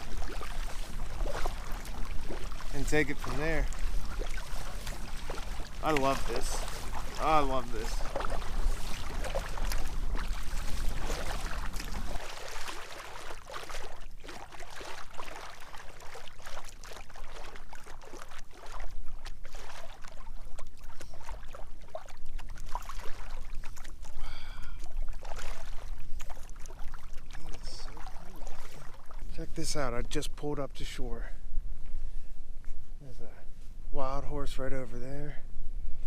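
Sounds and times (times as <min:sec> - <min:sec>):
water dripping: 0:00.0 - 0:19.3
kayak paddle splashing in water: 0:00.0 - 0:29.4.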